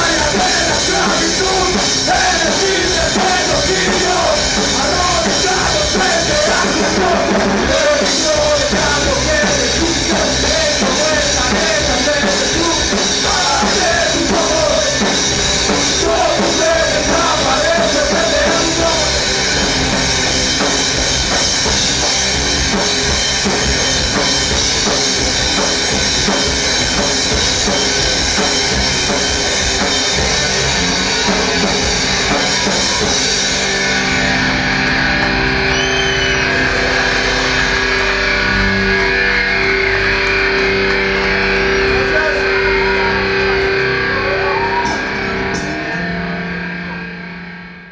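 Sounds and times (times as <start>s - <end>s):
bending lead guitar melody: 0.0s - 47.9s
metal band playing live: 0.0s - 47.9s.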